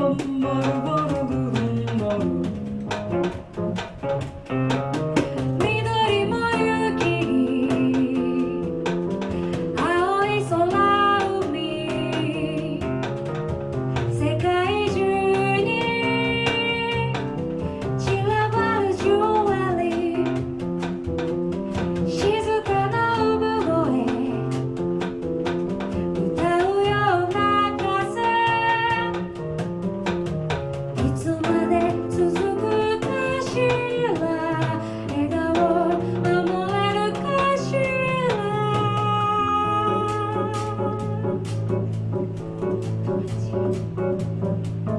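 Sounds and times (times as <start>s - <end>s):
woman singing: 0.0s - 2.7s, 5.6s - 13.2s, 14.2s - 21.0s, 22.0s - 25.2s, 26.2s - 29.4s, 31.0s - 41.6s
drum kit with cymbals: 0.0s - 44.9s
piano chords: 0.0s - 44.9s.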